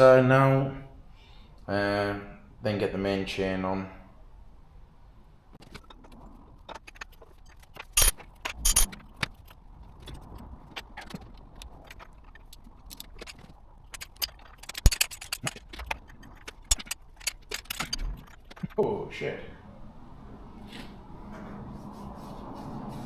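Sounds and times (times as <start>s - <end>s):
metal tools clinking: 5.8s - 9.5s, 12.4s - 18.8s.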